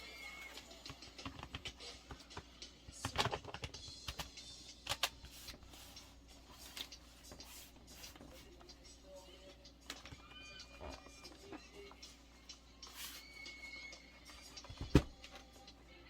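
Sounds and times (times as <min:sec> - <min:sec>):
plastic clicks and scrapes on laptop: 0:03.0 - 0:04.3.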